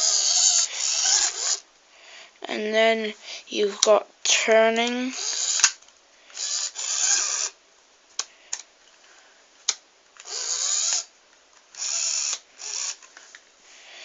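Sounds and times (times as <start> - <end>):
toy car electric motor whirring: 0.0 - 1.6, 5.1 - 7.6, 10.2 - 11.1, 11.8 - 13.1.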